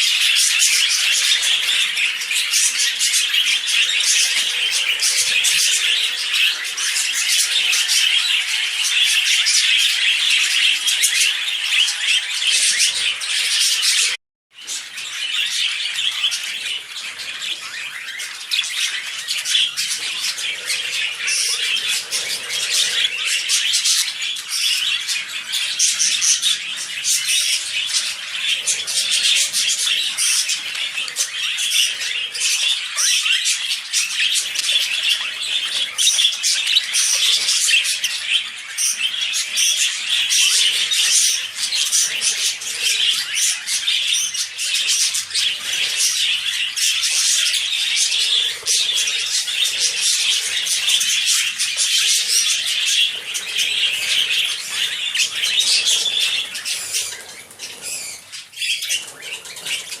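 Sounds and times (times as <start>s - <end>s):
budgerigar warbling and chattering: 15.3s - 60.0s.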